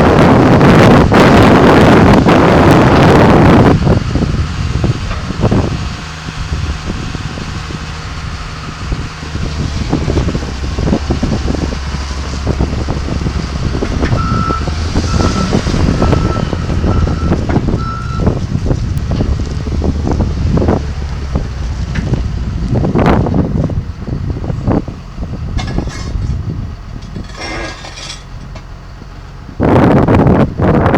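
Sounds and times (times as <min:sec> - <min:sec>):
diesel engine running: 0:00.0 - 0:30.9
reversing alarm beeps: 0:14.1 - 0:18.4.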